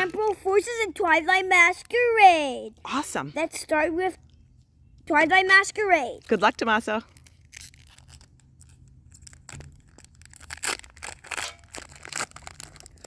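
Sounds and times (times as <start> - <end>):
foil pack tearing and rustling: 7.0 - 13.0.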